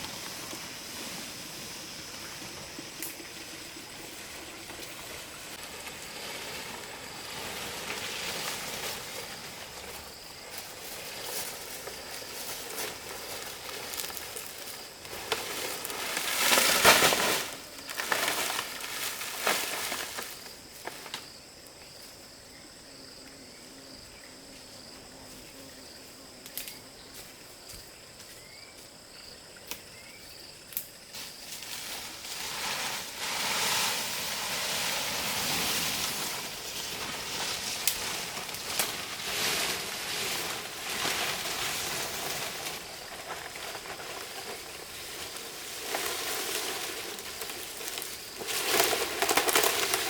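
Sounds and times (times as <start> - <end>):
insects chirring: 0.0 - 50.0
loud rustling and crackling: 4.7 - 21.2, 31.6 - 50.0.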